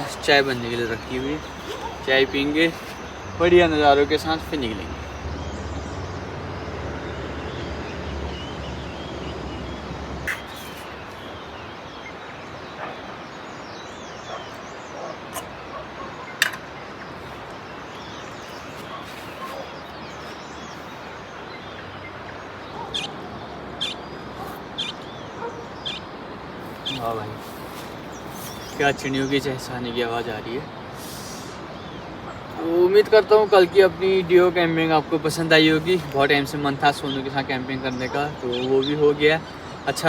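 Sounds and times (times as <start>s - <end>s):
birds chirping and calling: 0.0s - 40.0s
background hiss: 10.3s - 21.8s, 23.8s - 36.8s.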